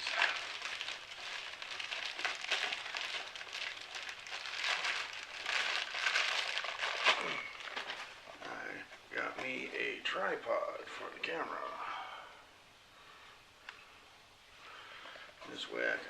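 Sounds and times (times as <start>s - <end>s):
packaging crinkling and rustling: 0.0s - 9.7s.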